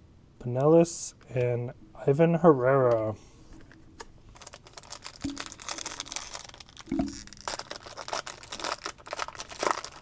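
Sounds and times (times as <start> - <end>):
foil wrapper crinkling: 4.3 - 10.0.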